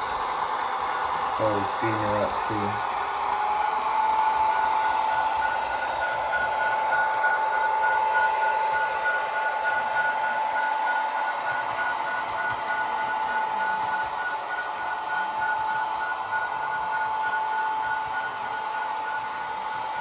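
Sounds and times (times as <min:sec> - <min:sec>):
model train diesel engine sound: 0:00.0 - 0:03.6.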